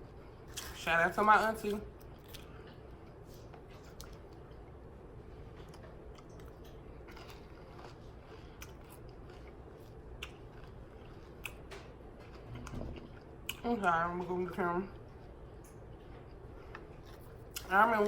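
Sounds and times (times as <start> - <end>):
chewing crunchy chips: 0.5 - 0.8, 1.9 - 4.7, 5.4 - 14.3.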